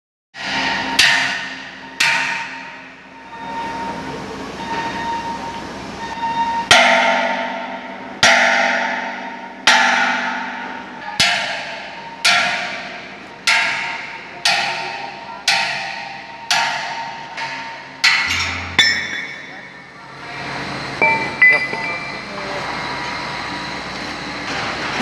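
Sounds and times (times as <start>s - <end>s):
hammer on metal: 0.4s - 4.0s, 6.2s - 22.1s.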